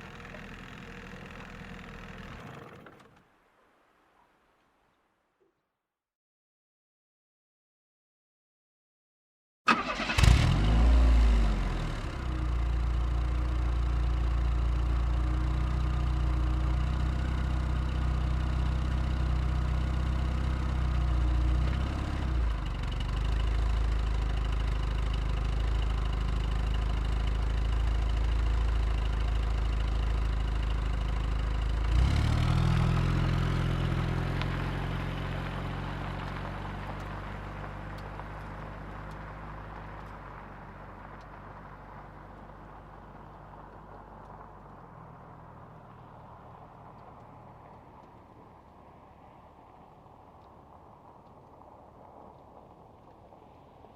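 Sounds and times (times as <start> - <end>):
car engine idling: 0.0 - 3.2, 9.7 - 52.4
car engine starting and revving: 0.0 - 3.2, 9.7 - 48.7.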